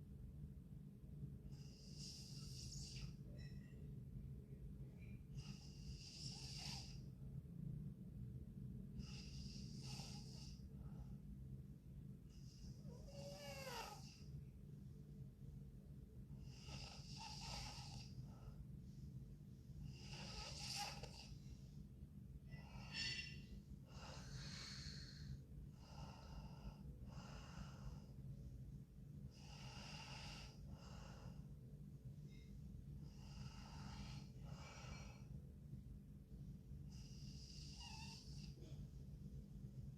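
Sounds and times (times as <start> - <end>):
steady low hum: 0.0 - 39.9
girl snoring softly: 1.4 - 3.6, 5.1 - 7.2, 8.9 - 11.1, 12.3 - 14.4, 16.3 - 18.6, 19.8 - 21.7, 22.5 - 28.2, 29.3 - 31.5, 33.0 - 35.4, 36.9 - 38.8.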